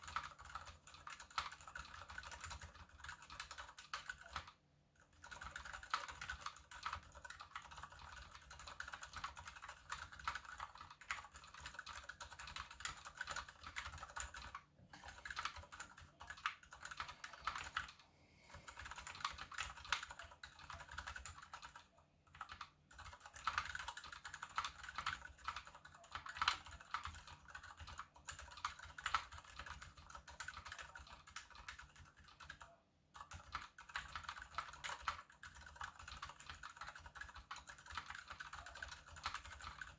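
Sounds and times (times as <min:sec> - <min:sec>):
mechanical keyboard typing: 0:00.0 - 0:18.0, 0:18.6 - 0:39.9.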